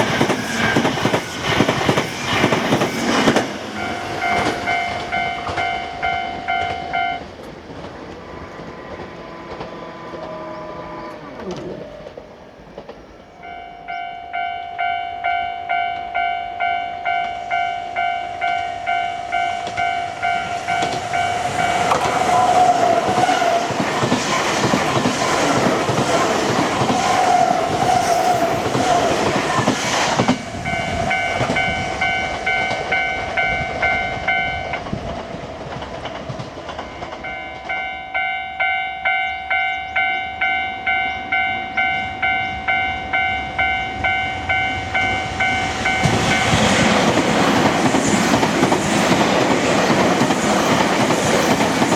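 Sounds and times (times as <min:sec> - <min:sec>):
train running noise: 0:00.0 - 0:51.9
level crossing warning bell: 0:03.7 - 0:07.3, 0:13.4 - 0:22.5, 0:30.6 - 0:34.9, 0:36.9 - 0:46.9.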